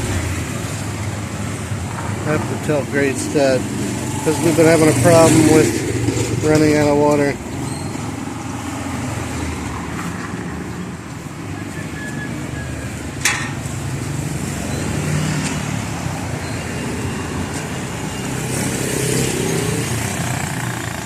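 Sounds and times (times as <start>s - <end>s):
vehicle engine running: 0.0s - 11.0s.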